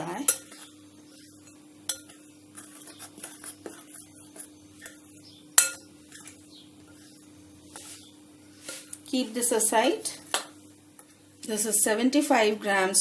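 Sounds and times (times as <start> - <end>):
metal spoon stirring powder in bowl: 0.0 - 9.0.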